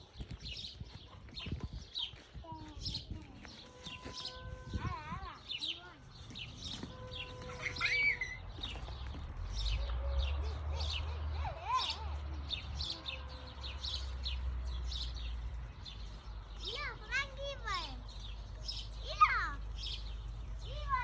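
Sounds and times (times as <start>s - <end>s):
small birds chirping: 0.0s - 21.0s.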